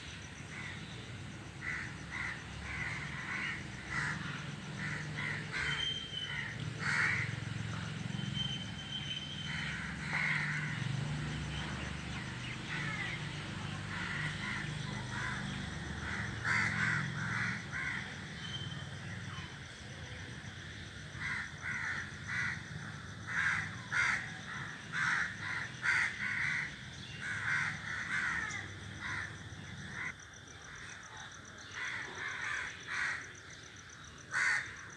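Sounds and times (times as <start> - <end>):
crows cawing: 1.6 - 8.0, 9.4 - 11.0, 12.6 - 18.5, 21.1 - 30.1, 31.7 - 33.4, 34.3 - 34.9.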